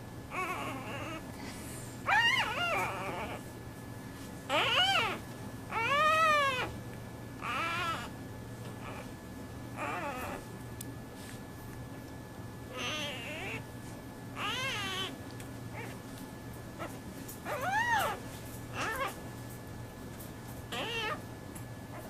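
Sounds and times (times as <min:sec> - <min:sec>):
leopard cub mewing: 0:12.7 - 0:13.6, 0:14.4 - 0:15.2, 0:20.7 - 0:21.2.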